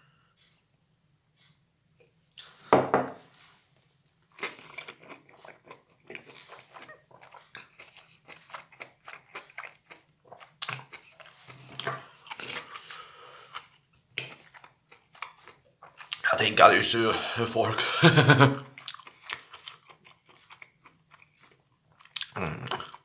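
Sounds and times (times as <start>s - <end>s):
person chewing mushrooms: 4.3s - 17.3s, 18.1s - 23.0s
wet mouth clicks: 4.5s - 11.4s, 18.8s - 21.3s, 22.0s - 23.0s.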